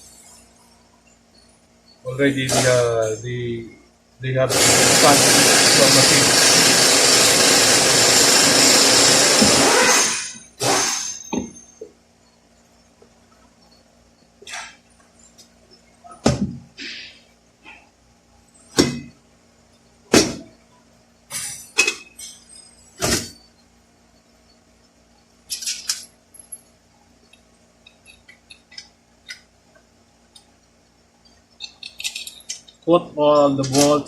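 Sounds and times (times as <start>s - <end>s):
metal tools clanking on workbench: 31.6s - 32.8s.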